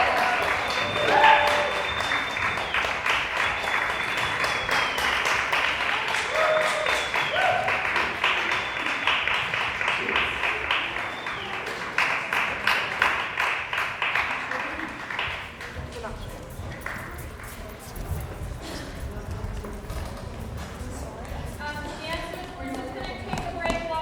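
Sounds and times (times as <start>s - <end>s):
high held whistles: 0.0s - 5.7s, 6.4s - 9.2s
audience applauding: 0.0s - 16.2s
short shouts: 1.0s - 1.8s.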